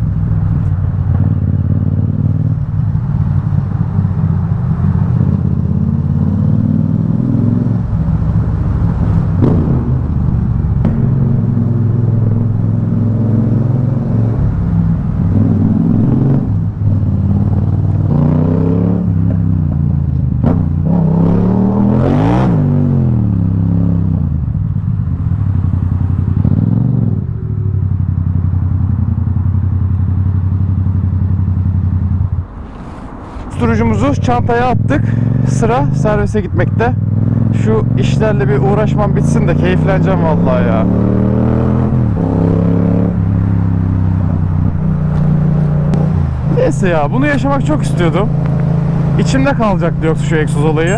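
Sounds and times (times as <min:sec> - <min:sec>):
loud motorcycle engine revving: 0:04.9 - 0:08.1, 0:09.0 - 0:19.6, 0:20.4 - 0:24.2, 0:26.3 - 0:27.7, 0:33.7 - 0:50.9.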